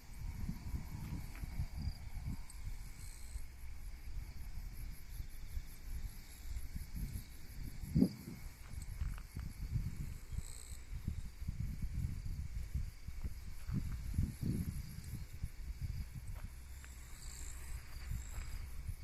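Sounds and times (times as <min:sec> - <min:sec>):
insects trilling: 0:00.0 - 0:19.0
wind buffeting microphone: 0:00.0 - 0:19.0.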